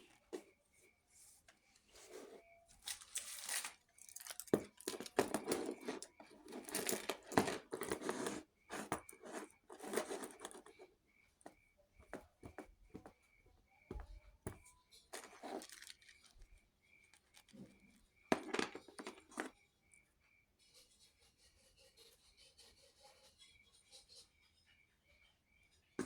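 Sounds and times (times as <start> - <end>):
crinkling and tearing: 2.8 - 5.2, 15.2 - 16.5.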